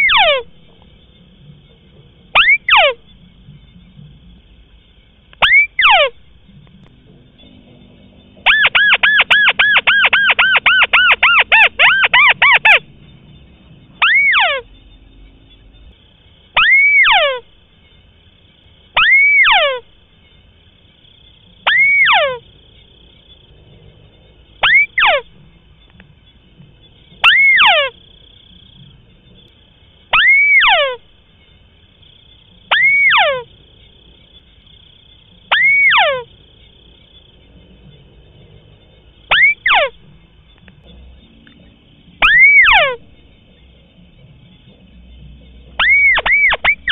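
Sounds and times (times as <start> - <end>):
bird calling double note: 19.0 - 19.8, 27.2 - 28.0, 30.1 - 31.0.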